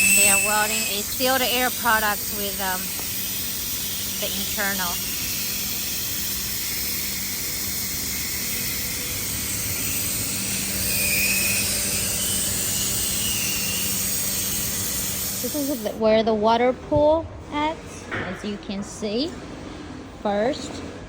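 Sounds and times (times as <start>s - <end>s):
faint high whine: 0.0s - 16.0s
hot-air welding machine hissing: 0.0s - 16.0s.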